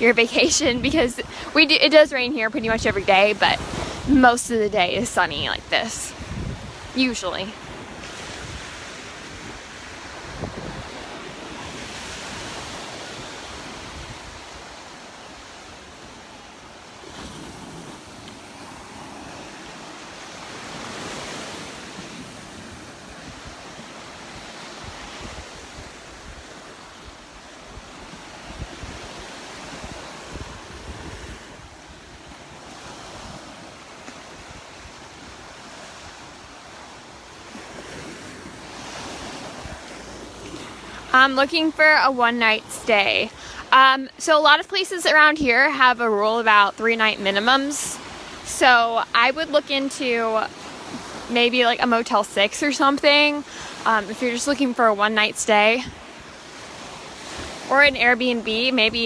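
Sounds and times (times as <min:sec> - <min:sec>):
wind buffeting microphone: 0:00.0 - 0:16.2, 0:17.1 - 0:36.6, 0:37.5 - 0:45.6
waves breaking on beach: 0:00.0 - 0:59.0.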